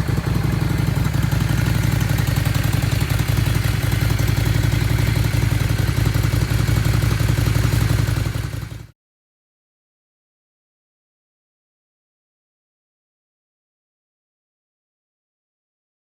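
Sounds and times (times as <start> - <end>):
motorcycle engine idling: 0.0 - 8.9.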